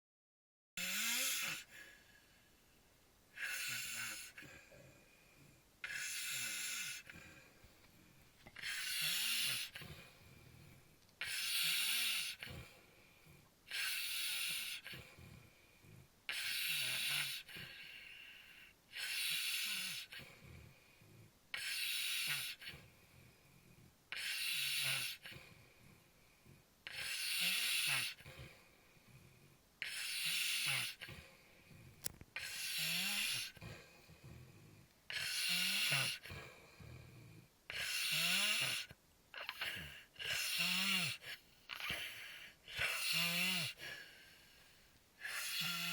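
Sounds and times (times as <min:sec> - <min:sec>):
person snoring: 0:00.8 - 0:02.0, 0:03.4 - 0:05.1, 0:05.8 - 0:07.5, 0:08.6 - 0:12.8, 0:29.8 - 0:44.1, 0:45.2 - 0:45.9.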